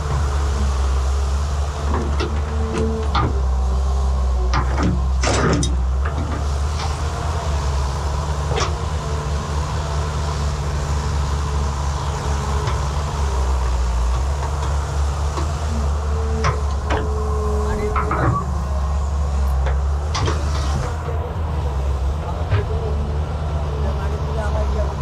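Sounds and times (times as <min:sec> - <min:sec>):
excavator diesel engine: 0:00.0 - 0:25.0
excavator bucket metallic clanks: 0:04.5 - 0:06.2, 0:16.4 - 0:18.8.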